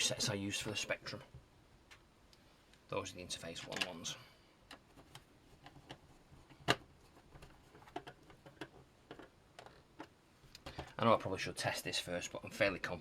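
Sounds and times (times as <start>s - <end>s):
small screws and plastic parts clicking: 4.6s - 10.9s.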